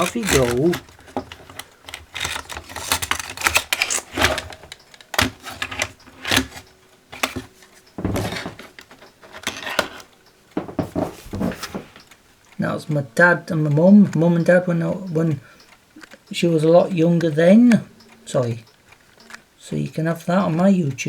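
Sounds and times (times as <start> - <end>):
objects clicking and knocking: 0.0 - 12.0
rustling: 0.0 - 12.2.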